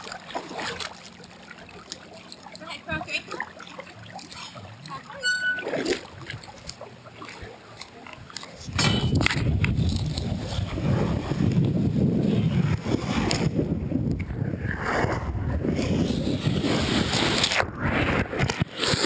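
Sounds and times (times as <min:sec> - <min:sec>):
water rushing: 0:00.0 - 0:19.0
wind buffeting microphone: 0:08.6 - 0:19.0.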